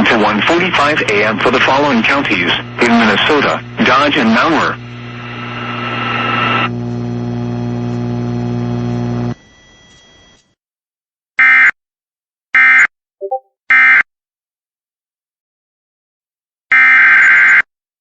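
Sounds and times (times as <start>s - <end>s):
electrical buzzing hum: 0.0s - 9.5s.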